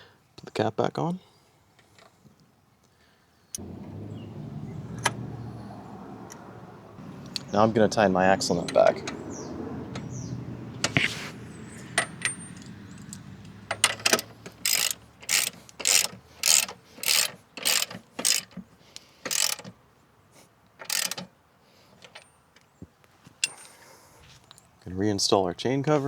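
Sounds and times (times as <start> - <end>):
ratchet wrench clicking: 12.0 - 19.7, 20.8 - 21.3.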